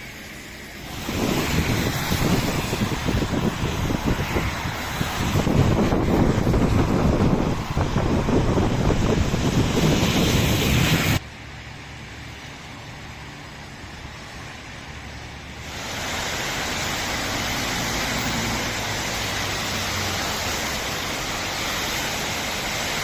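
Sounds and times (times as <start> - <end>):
heavy rain hissing: 0.0 - 23.0.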